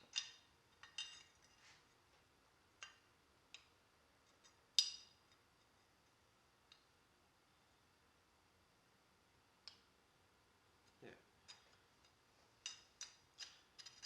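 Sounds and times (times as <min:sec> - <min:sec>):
small metal parts clinking: 0:00.0 - 0:01.6, 0:12.6 - 0:14.0.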